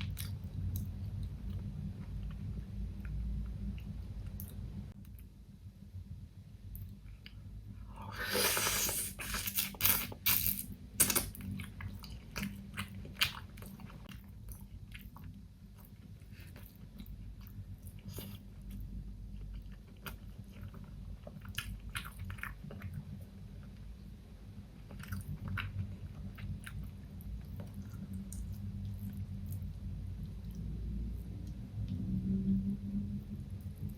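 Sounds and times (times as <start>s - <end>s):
chewing: 24.8s - 31.6s.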